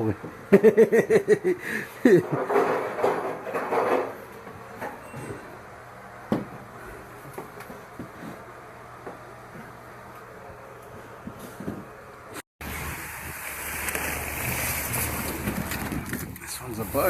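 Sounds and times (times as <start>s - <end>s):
objects knocking: 2.2s - 5.0s
rattling scrape: 2.3s - 4.2s.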